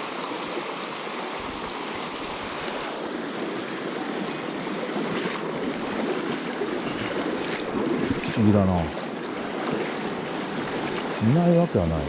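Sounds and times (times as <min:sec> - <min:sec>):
mountain stream flowing water: 0:00.0 - 0:12.0.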